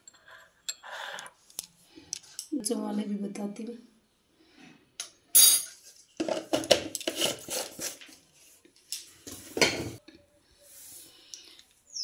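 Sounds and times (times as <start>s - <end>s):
utensils knocking and scraping dishes: 9.5s - 10.0s.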